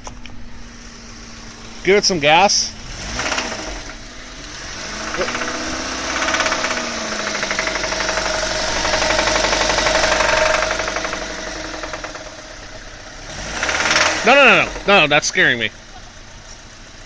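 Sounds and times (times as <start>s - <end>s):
car engine running under throttle: 0.0s - 17.0s
rapid engine knock: 2.8s - 15.1s.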